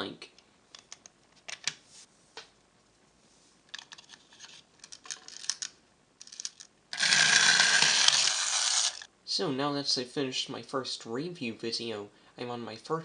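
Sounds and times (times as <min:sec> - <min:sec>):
plastic toy parts clicking: 0:03.7 - 0:09.1
wind-up motor whirring: 0:06.9 - 0:09.1.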